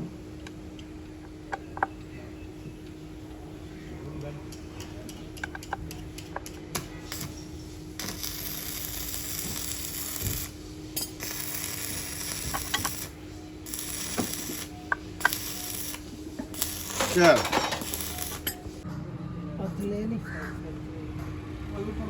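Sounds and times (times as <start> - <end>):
hand tools clicking and clinking: 4.5 - 18.8
hiss: 7.0 - 18.7.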